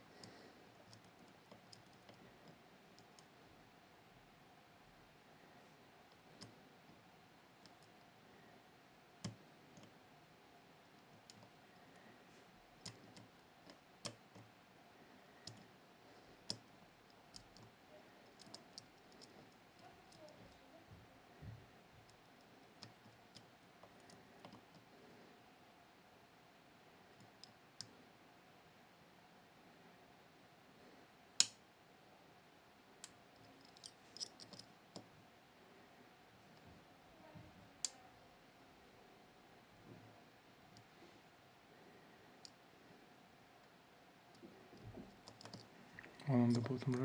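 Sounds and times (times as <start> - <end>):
lock pick clicking in a lock: 33.0 - 35.0.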